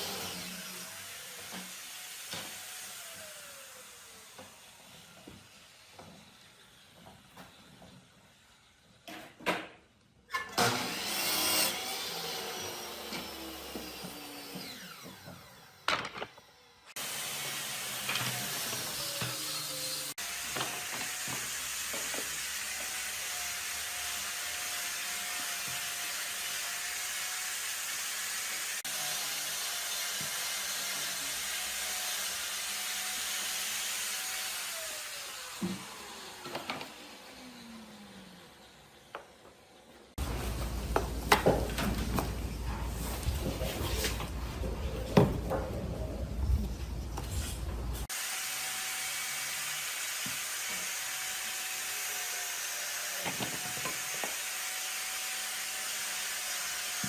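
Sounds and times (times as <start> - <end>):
power tool cutting wood: 0.0 - 8.8, 10.4 - 42.6, 48.0 - 57.0.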